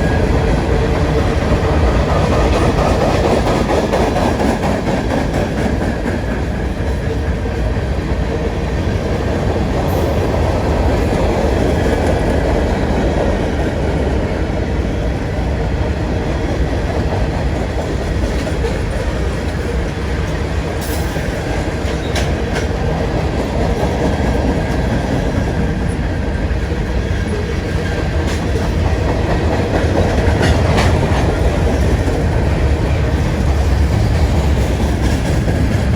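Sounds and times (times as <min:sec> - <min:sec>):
train wheels rumbling on track: 0:00.0 - 0:35.9.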